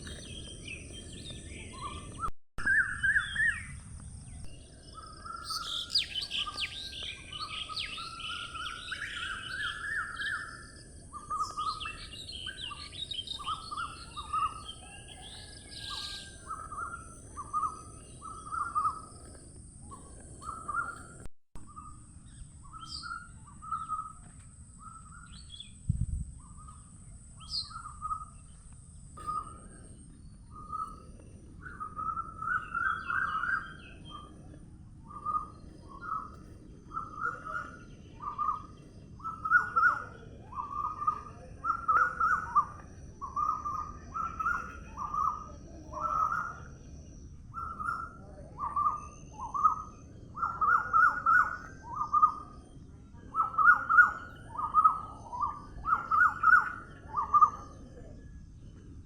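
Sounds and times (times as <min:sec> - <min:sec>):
faint outdoor hiss: 0:00.0 - 0:59.0
bird calling in low notes: 0:26.4 - 0:58.4.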